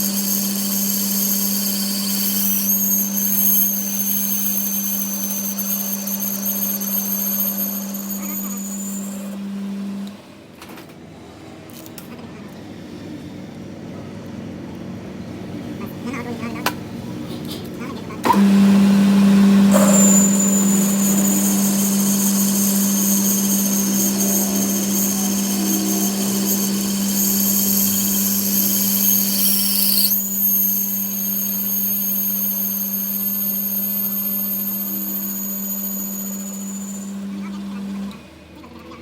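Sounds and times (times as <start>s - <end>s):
machine humming and whining: 0.0s - 10.2s, 18.1s - 39.0s.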